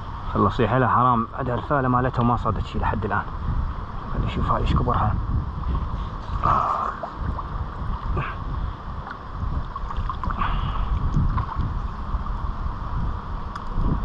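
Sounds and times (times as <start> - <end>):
wind buffeting microphone: 0.0 - 14.0
water sloshing and splashing: 4.7 - 12.6.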